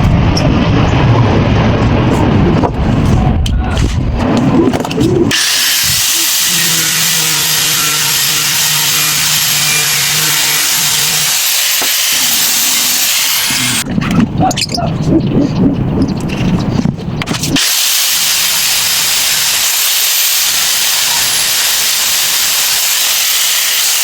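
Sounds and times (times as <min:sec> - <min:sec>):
power tool whining: 0:05.3 - 0:13.8, 0:17.5 - 0:24.0.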